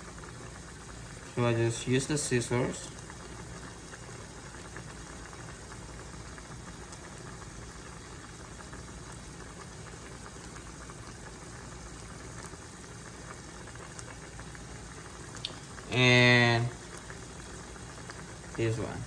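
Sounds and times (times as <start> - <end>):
sauce bubbling in a pan: 0.0 - 19.0.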